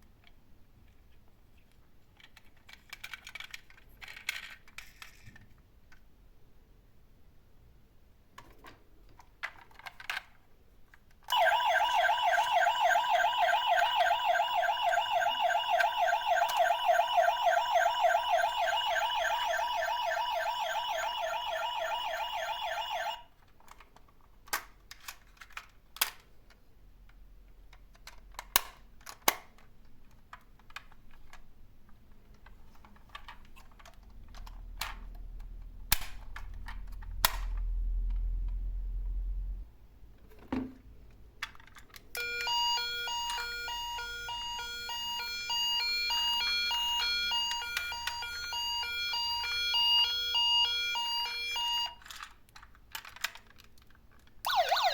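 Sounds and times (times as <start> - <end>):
toy siren warbling: 11.3 - 23.2, 42.2 - 52.0, 54.5 - 54.9.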